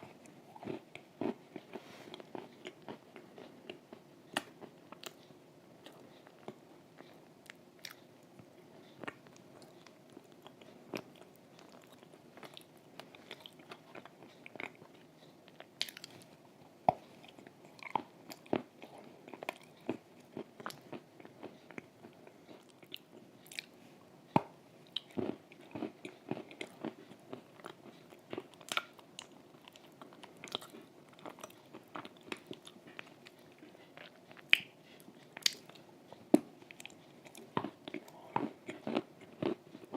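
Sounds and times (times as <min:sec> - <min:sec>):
chewing and crunching chalk: 0:24.9 - 0:39.9.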